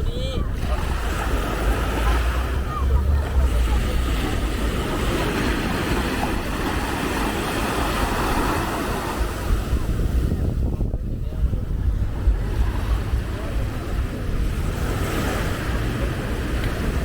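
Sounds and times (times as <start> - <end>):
surf breaking on sand: 0.0 - 17.0
wind rumbling on microphone: 0.0 - 17.0.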